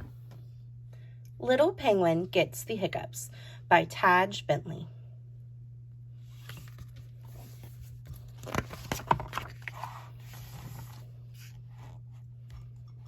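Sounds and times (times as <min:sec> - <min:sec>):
steady low hum: 0:00.0 - 0:13.0
book pages turning: 0:06.3 - 0:12.6.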